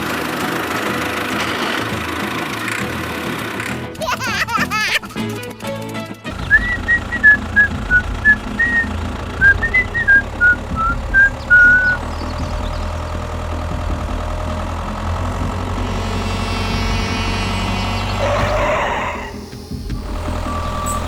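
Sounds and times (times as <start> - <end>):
engine-like drone: 0.0 - 4.0, 4.6 - 21.0
person whistling a tune: 6.4 - 12.0.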